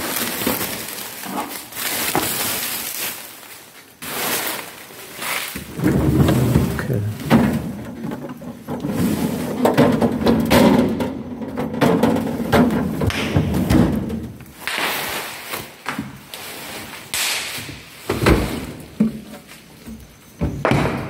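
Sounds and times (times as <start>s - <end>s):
sliding scrapes: 4.0s - 10.2s, 14.8s - 17.1s
refrigerator shelves knocking: 5.6s - 14.3s.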